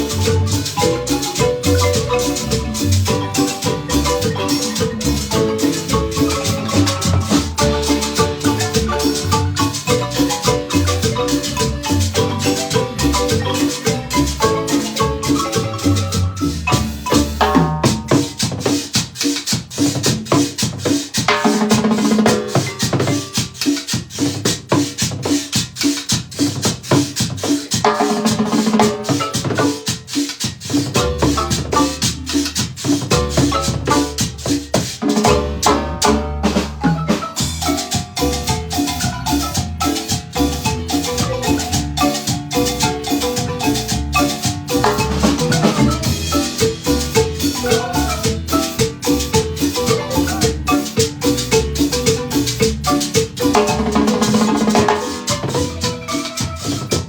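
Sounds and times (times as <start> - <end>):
bass line: 0.0 - 18.2, 35.3 - 54.5
shaker: 0.0 - 35.8, 37.2 - 57.0
drums beat: 0.0 - 57.0
marimba mallet notes: 0.0 - 57.0.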